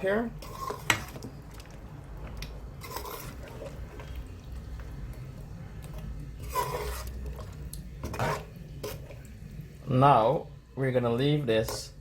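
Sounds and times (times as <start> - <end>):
spoon scraping a pot: 0.0 - 1.4, 2.7 - 4.4, 5.7 - 9.4, 11.5 - 12.0
wet sloshing of curry: 0.4 - 9.8.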